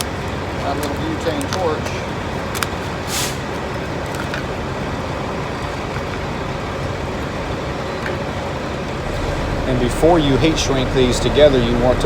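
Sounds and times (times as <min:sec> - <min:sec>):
engine and traffic rumble: 0:00.0 - 0:12.0
butane torch hiss: 0:03.0 - 0:03.5.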